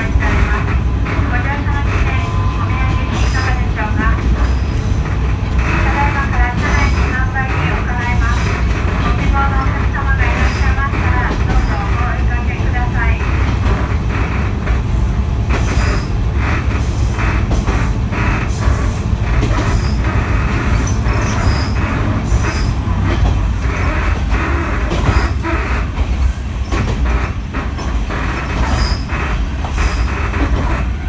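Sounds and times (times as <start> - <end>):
diesel engine rumbling: 0.0 - 31.0
high wheel squeals: 16.8 - 26.8, 28.6 - 31.0.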